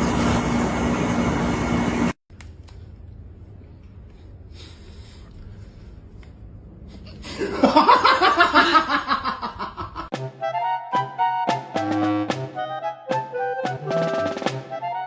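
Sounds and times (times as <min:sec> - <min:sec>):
faint room noise: 0:02.3 - 0:10.0
person laughing: 0:07.3 - 0:10.1.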